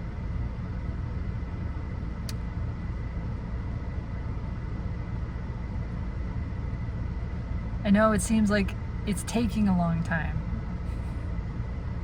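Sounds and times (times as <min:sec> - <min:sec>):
car rumble from inside cabin: 0:07.7 - 0:12.0.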